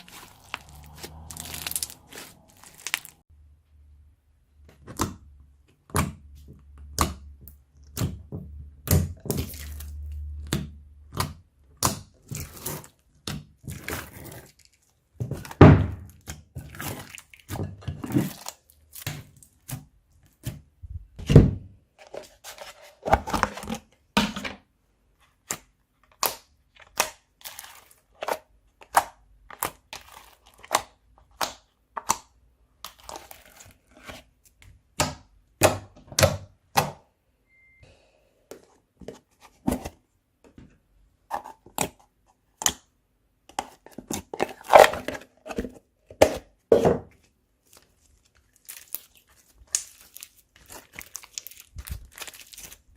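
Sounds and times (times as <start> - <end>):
crunchy slime crackling and popping: 0.0 - 3.2, 48.0 - 52.9
slime squelching: 0.0 - 3.3, 4.8 - 21.2, 25.3 - 35.8, 47.6 - 52.9.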